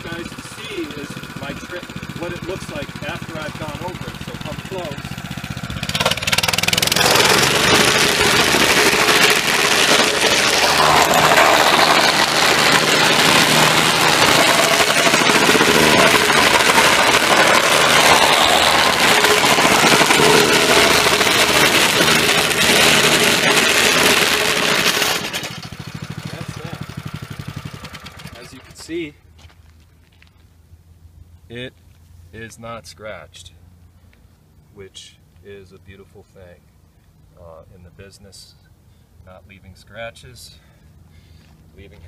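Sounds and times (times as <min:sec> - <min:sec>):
plate compactor engine and vibration: 0:00.0 - 0:28.8.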